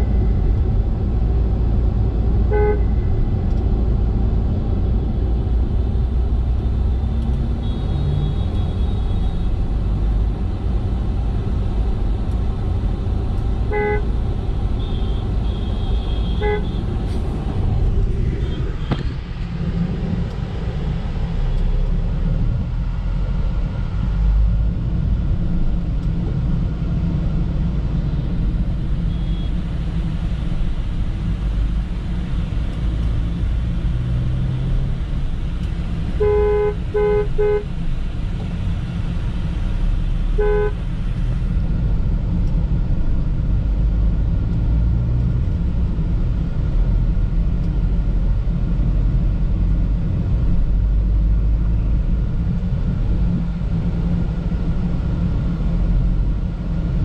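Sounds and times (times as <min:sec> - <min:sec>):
car engine and tyre rumble: 0:00.0 - 0:57.0
car horn tooting: 0:02.5 - 0:02.9, 0:13.7 - 0:14.1, 0:14.8 - 0:16.9, 0:36.2 - 0:37.7, 0:40.4 - 0:40.8.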